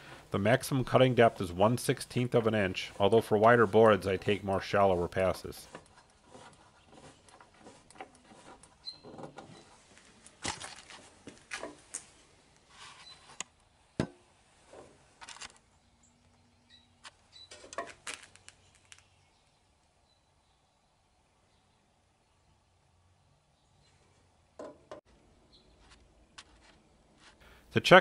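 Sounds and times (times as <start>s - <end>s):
knocks clicks and scrapes of handling: 2.1s - 12.1s, 17.0s - 19.1s.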